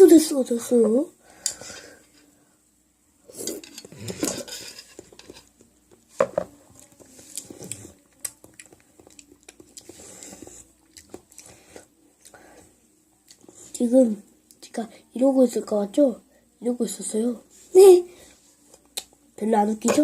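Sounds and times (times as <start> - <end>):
metal utensil scraping a bowl: 3.3 - 5.5.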